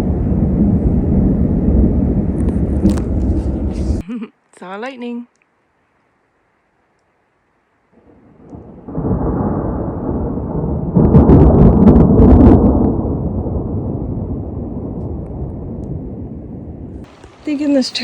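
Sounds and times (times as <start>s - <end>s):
sharp thunder cracks: 0.0s - 4.0s, 8.0s - 17.8s
thunder rumbling: 0.0s - 4.0s, 8.0s - 18.0s.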